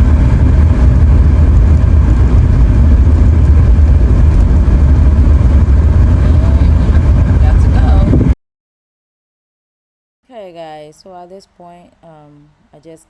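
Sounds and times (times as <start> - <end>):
car engine and road noise: 0.0 - 8.4.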